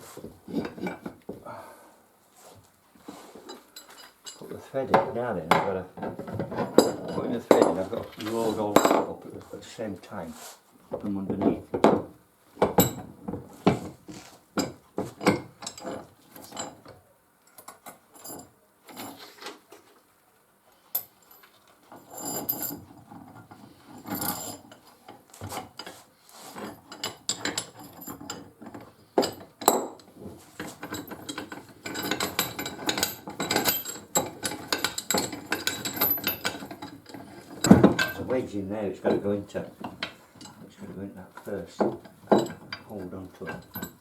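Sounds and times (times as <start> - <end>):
metal vice parts clattering: 3.5 - 9.2, 26.6 - 44.0.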